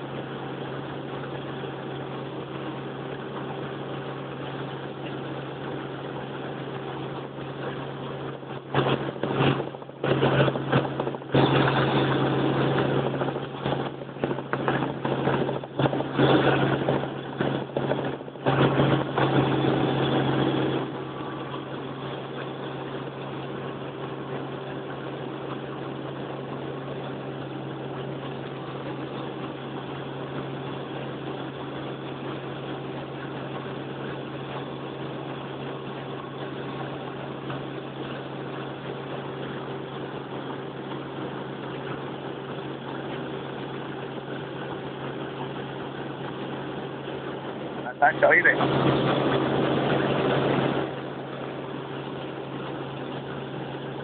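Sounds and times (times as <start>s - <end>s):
helicopter cabin hum: 0.0s - 54.0s
loud irregular rushing noise: 2.2s - 23.7s, 41.4s - 54.0s.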